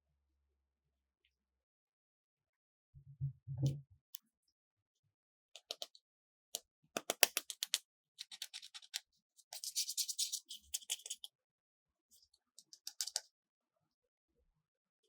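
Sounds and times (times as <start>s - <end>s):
toys scratching and rubbing: 8.2s - 11.2s.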